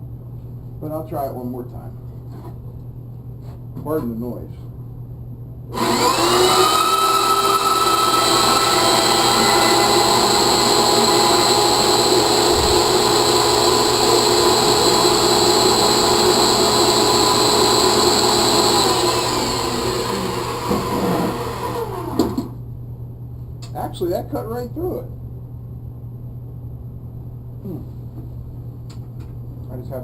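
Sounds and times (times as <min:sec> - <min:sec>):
band saw cutting metal: 0:05.8 - 0:22.5.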